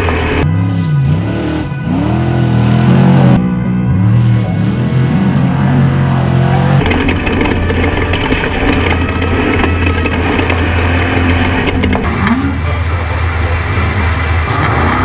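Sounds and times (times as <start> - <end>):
race vehicle engine running hard: 0.0 - 15.0
rattling crunching noise: 5.0 - 13.1.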